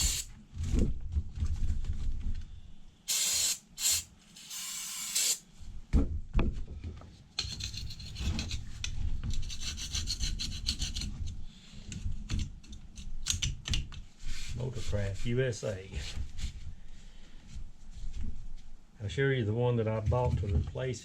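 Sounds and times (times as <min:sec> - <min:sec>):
aerosol can spraying: 0:00.0 - 0:00.3, 0:03.1 - 0:05.4.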